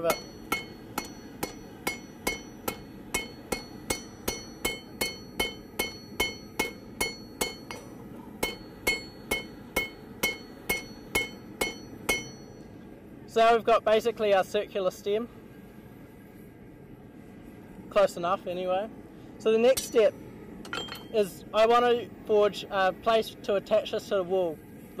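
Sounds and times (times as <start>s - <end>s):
hammer ringing on anvil: 0.0s - 12.7s, 19.8s - 20.1s.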